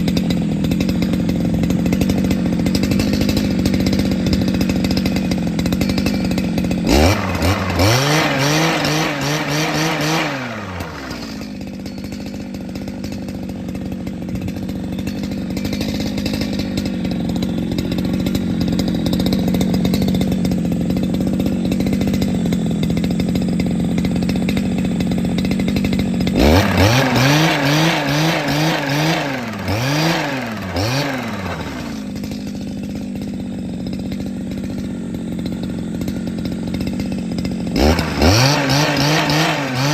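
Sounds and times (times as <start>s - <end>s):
small engine idling and revving: 0.0s - 39.9s.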